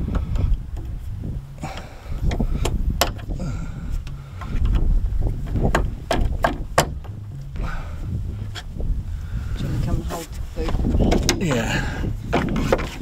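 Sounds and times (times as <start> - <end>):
low rumble: 0.0 - 12.8
clicks and knocks on tailgate: 1.8 - 3.3, 5.4 - 7.2.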